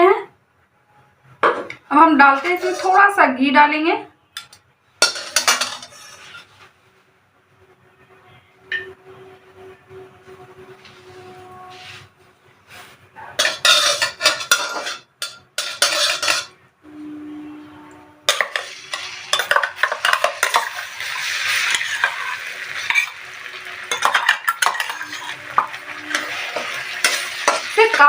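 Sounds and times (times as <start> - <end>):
spoon scraping a pan: 2.2 - 3.2, 4.4 - 6.7, 12.7 - 16.6, 18.2 - 28.0
frying sizzle: 18.3 - 28.0.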